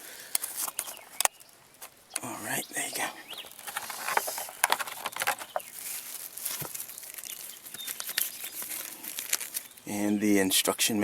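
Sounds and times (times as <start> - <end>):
packaging rustling: 3.3 - 9.9.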